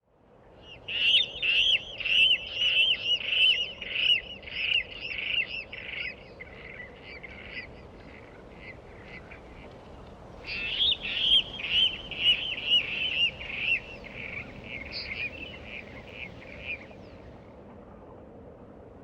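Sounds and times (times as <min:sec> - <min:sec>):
water rail squealing call: 0:10.5 - 0:16.3.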